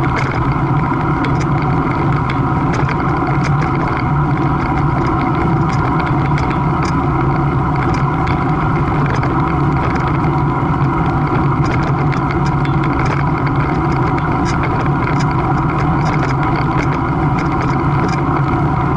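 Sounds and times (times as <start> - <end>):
light clicks and rattles: 0.0 - 18.9
loud mechanical drone: 0.0 - 18.9.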